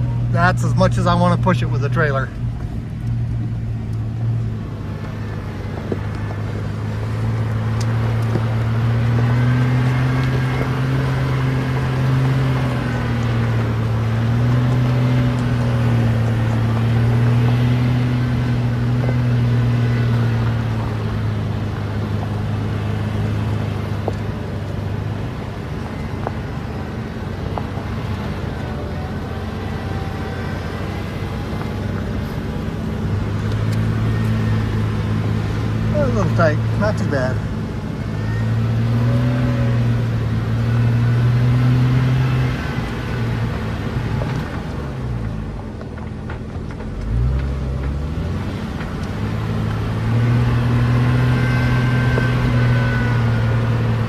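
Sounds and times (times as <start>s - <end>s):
engine running while driving: 0.0s - 54.0s
road and tyre rumble: 0.0s - 54.0s.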